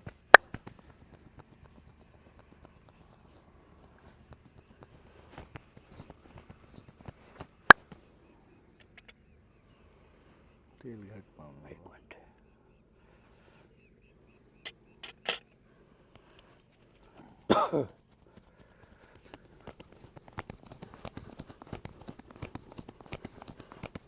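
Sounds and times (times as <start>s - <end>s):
hands slapping skin: 0.0s - 8.0s, 16.2s - 24.0s.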